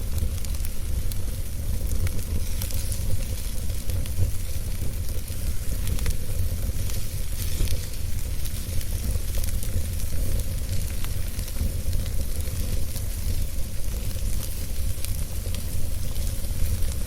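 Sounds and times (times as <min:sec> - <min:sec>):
fire crackling and popping: 0:00.0 - 0:17.0
wood fire rumbling and hissing: 0:00.0 - 0:17.0.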